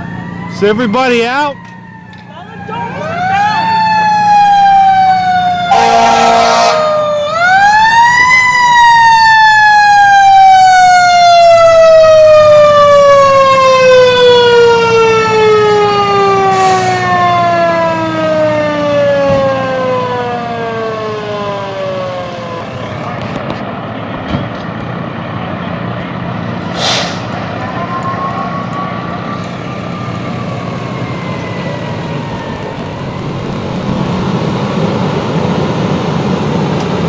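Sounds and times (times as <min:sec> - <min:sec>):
fire engine siren winding: 0:00.0 - 0:23.4, 0:27.6 - 0:37.0
horn blast: 0:05.7 - 0:06.9
low engine hum: 0:11.8 - 0:37.0.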